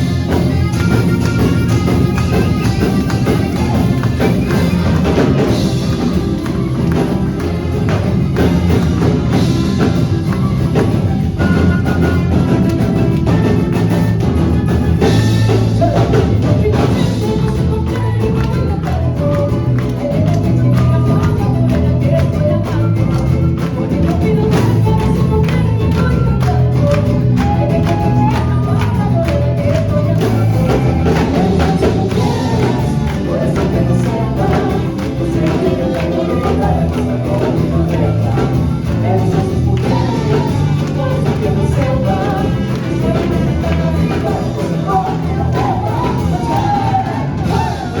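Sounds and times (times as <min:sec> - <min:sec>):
dense percussion: 0:00.0 - 0:48.0
person singing: 0:00.0 - 0:48.0.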